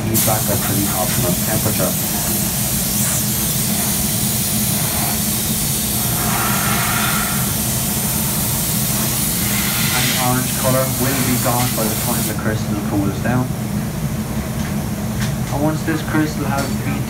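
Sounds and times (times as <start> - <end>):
hiss: 0.0 - 12.4
machinery hum: 0.0 - 17.0.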